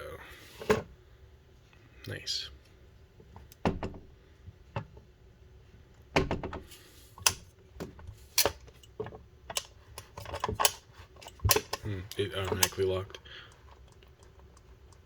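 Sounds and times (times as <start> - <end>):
lock box clicks and knocks: 9.5 - 11.8.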